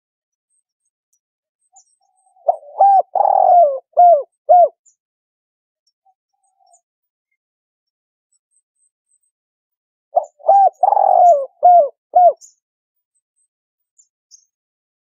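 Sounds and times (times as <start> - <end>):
dove cooing: 2.4 - 4.8, 10.2 - 12.5.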